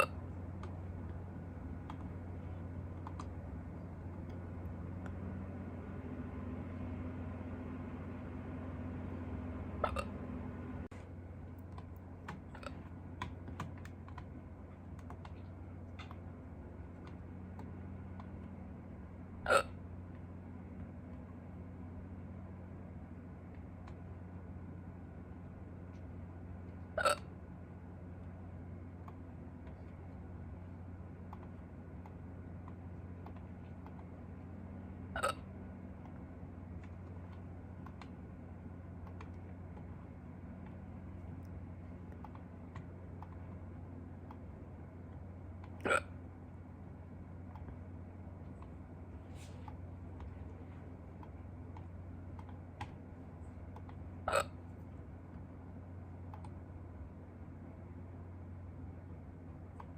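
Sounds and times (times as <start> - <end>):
faint scattered clicks: 0.0 - 5.3, 11.5 - 18.6, 31.2 - 34.2, 35.2 - 46.0, 49.6 - 53.0, 56.2 - 56.6
low steady hum: 0.0 - 59.9
person hiccuping: 9.8 - 10.2, 19.4 - 19.8, 27.0 - 27.3, 35.1 - 35.5, 45.8 - 46.2, 54.2 - 54.6.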